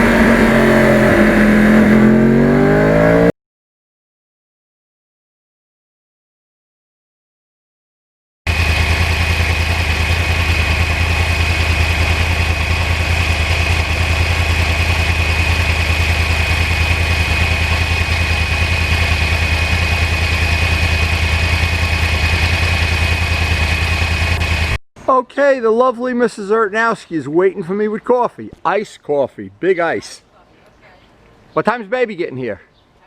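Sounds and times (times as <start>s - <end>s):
motorcycle engine idling: 0.0s - 2.1s, 8.5s - 24.8s
thin high whine: 0.0s - 2.4s.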